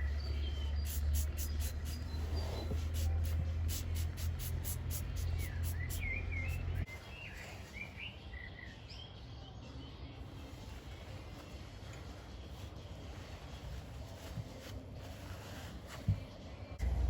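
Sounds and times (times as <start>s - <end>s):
steady low hum: 0.0s - 6.9s, 10.2s - 17.0s
birds chirping: 0.0s - 14.1s.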